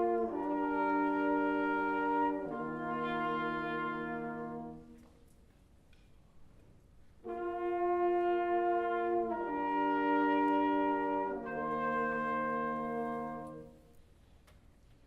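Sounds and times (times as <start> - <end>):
concert band brass chords: 0.0 - 5.0, 7.2 - 13.8.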